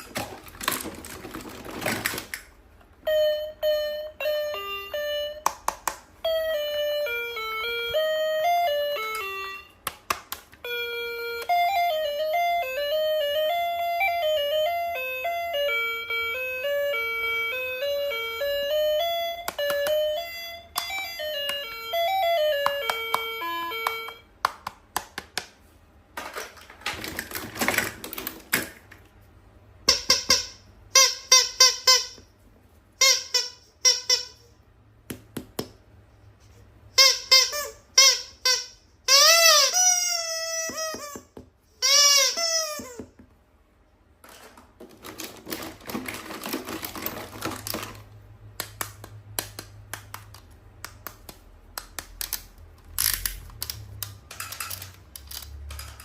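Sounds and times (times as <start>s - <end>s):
electronic chime melody: 3.1s - 5.5s.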